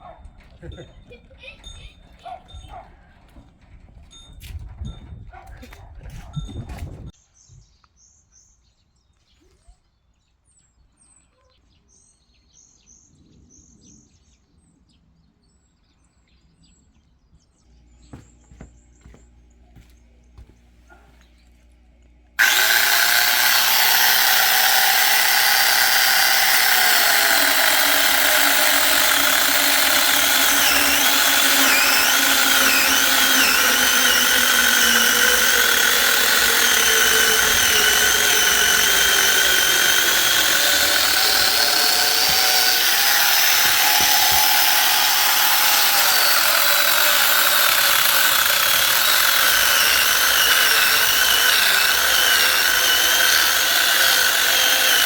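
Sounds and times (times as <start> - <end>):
power saw cutting wood: 22.4 - 55.0.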